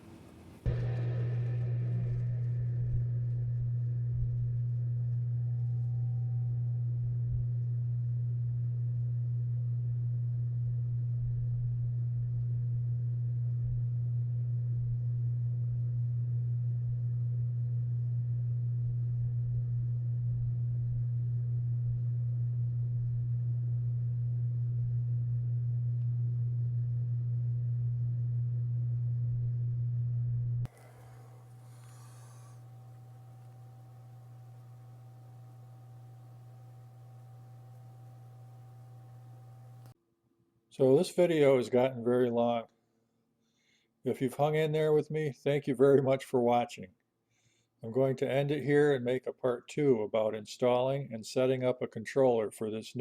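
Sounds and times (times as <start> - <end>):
low-pitched hum: 0.0 - 40.0.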